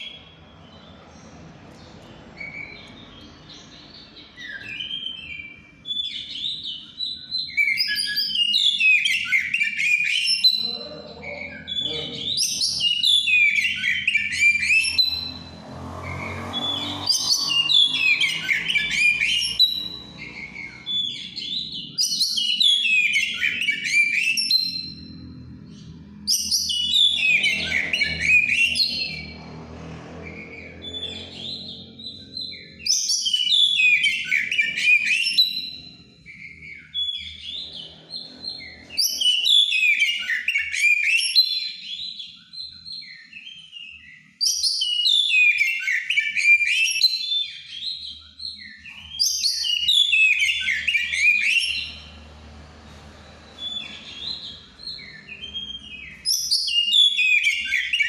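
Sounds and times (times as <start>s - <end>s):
bird singing whistled phrases: 4.1s - 15.3s, 38.5s - 52.1s, 53.6s - 58.0s.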